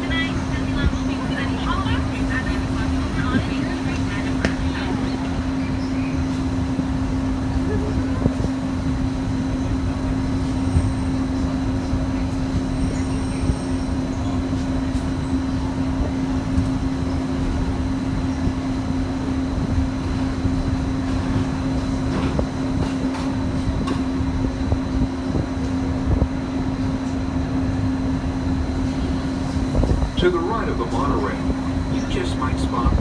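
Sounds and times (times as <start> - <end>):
constant hum: 0.0 - 33.0
monorail rumbling along its beam: 0.0 - 33.0
wind noise from open window: 6.2 - 30.3.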